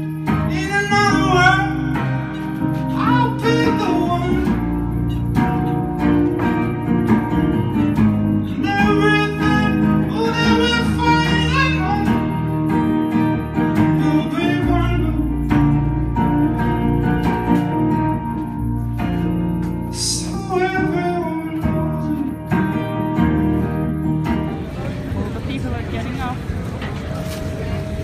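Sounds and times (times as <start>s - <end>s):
strummed acoustic guitar: 0.0s - 26.3s
person singing: 0.2s - 4.8s, 8.4s - 12.4s, 13.8s - 15.9s, 19.9s - 23.0s.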